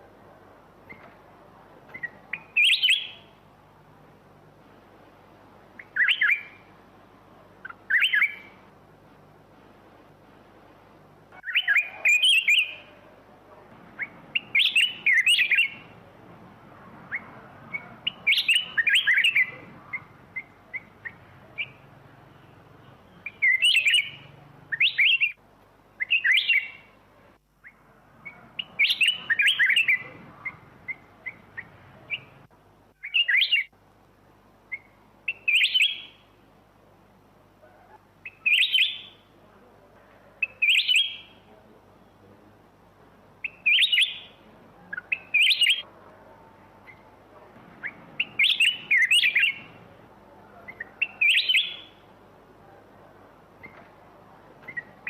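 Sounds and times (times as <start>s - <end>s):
bird chirping song: 1.9s - 3.4s, 5.8s - 6.7s, 7.6s - 8.6s, 11.3s - 13.0s, 13.8s - 16.0s, 16.8s - 27.0s, 27.6s - 33.7s, 34.7s - 36.4s, 37.7s - 39.3s, 40.4s - 41.5s, 43.4s - 45.9s, 46.8s - 52.1s, 54.6s - 55.0s.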